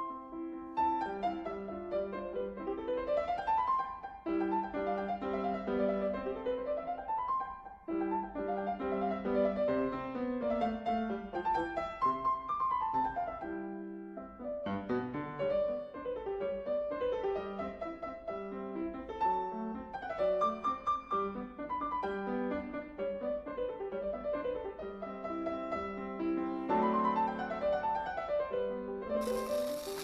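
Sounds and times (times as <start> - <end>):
solo piano music: 0.0 - 30.0.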